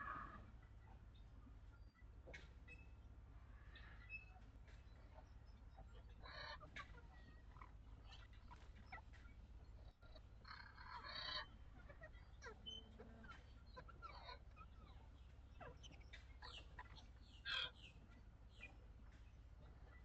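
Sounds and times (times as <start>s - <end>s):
harsh caw: 0.0s - 0.5s
birds calling: 0.0s - 20.0s.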